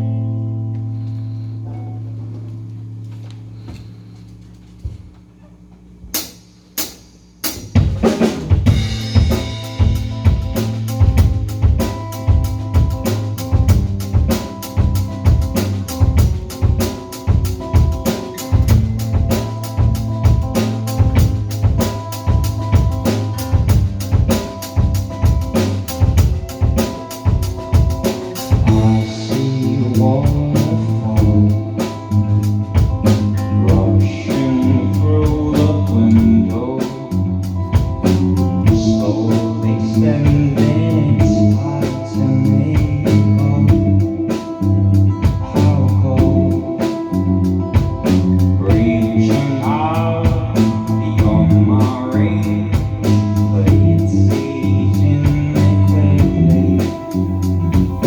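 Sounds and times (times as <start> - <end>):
electric guitar: 0.0 - 4.8, 7.5 - 58.0
bass guitar: 0.0 - 58.0
drum kit: 6.0 - 58.0
person singing: 26.1 - 32.2, 33.4 - 37.4, 38.3 - 44.5, 45.3 - 47.2, 48.6 - 58.0.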